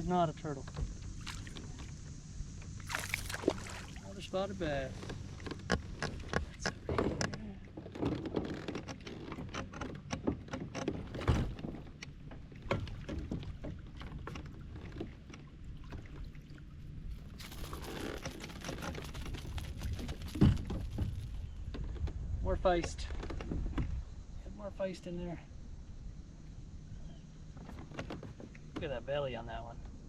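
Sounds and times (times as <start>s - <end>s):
low steady rumble: 0.0s - 7.9s, 8.6s - 30.0s
clicks and knocks in kayak: 4.9s - 16.4s, 17.4s - 24.0s, 27.6s - 29.0s.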